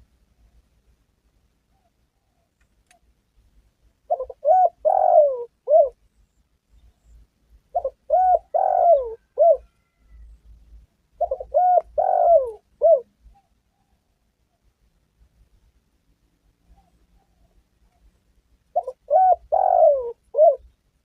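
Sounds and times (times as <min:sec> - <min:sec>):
dove cooing: 0:04.1 - 0:06.0, 0:07.7 - 0:10.3, 0:11.1 - 0:14.1, 0:18.7 - 0:20.8.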